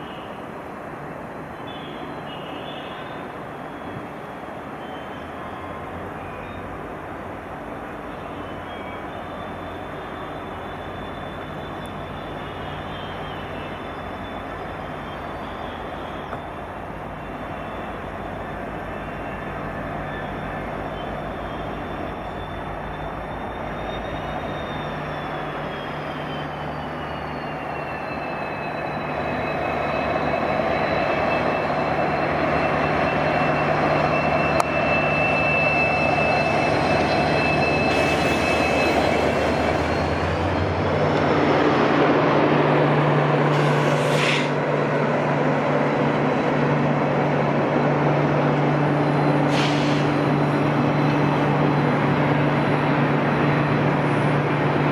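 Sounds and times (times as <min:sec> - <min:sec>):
locomotive low hum: 0:02.9 - 0:54.9
short hiss: 0:43.5 - 0:44.6, 0:49.5 - 0:50.1.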